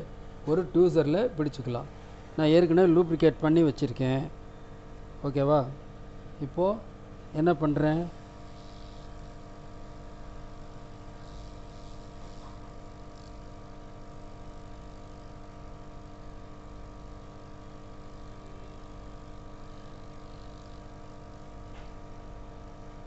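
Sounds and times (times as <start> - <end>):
hot-air blower humming: 0.0 - 23.0.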